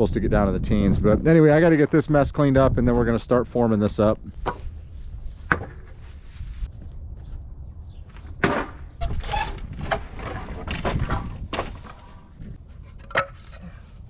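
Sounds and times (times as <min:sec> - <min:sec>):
boards knocking and scraping: 0:08.4 - 0:13.6.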